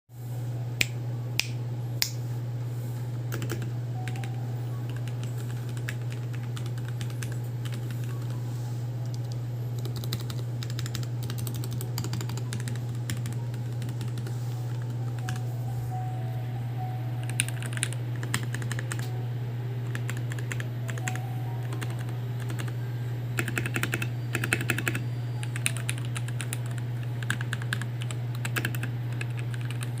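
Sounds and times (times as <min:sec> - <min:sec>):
steady low hum: 0:00.2 - 0:30.0
typing on mechanical keyboard: 0:03.3 - 0:04.3, 0:04.9 - 0:08.3, 0:09.1 - 0:15.4, 0:17.2 - 0:19.1, 0:19.9 - 0:22.7, 0:23.4 - 0:30.0.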